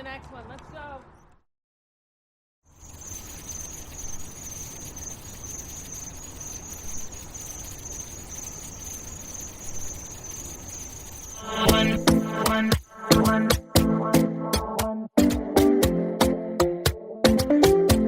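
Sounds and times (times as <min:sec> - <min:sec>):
high-pitched trilling insect buzz: 0:02.7 - 0:13.1.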